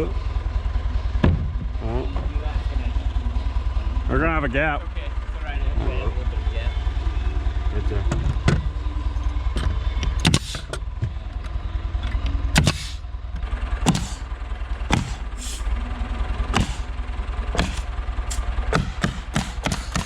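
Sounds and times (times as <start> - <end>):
steady low rumble: 0.0 - 19.4
carpentry knocks and bangs: 1.2 - 1.7, 10.2 - 11.2, 12.6 - 13.0, 13.8 - 14.2, 14.9 - 15.3, 16.6 - 16.9, 17.6 - 17.8, 18.7 - 20.0.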